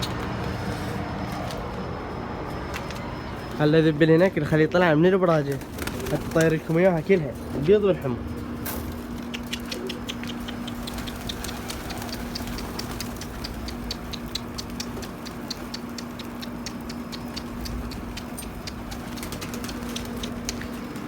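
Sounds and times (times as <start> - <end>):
steady low hum: 0.0 - 21.0
quick high ticks: 9.2 - 20.8.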